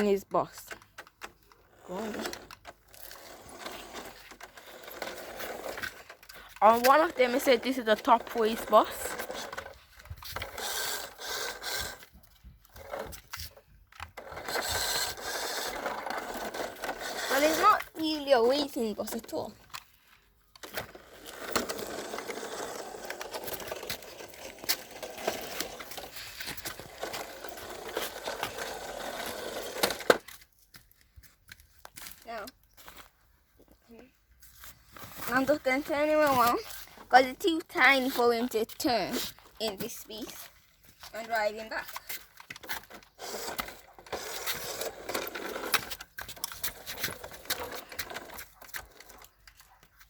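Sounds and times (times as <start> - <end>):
toy motor and gears whirring: 1.6 - 19.5, 20.6 - 30.2, 41.1 - 49.5.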